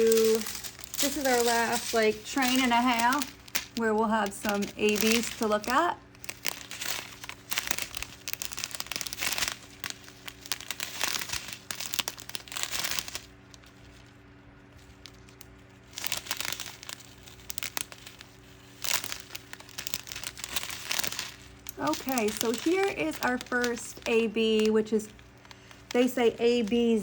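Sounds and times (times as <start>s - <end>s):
plastic packaging crinkling: 0.0s - 27.0s.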